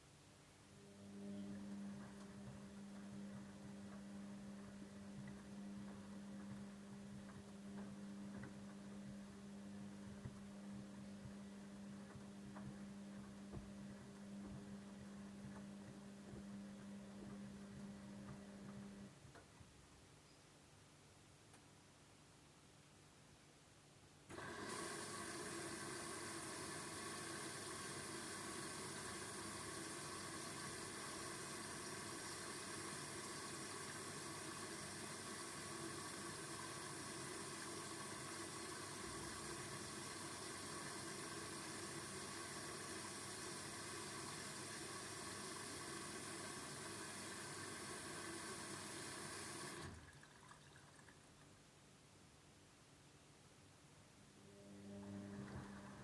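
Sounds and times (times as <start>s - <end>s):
water rushing into washing machine: 24.3s - 51.4s.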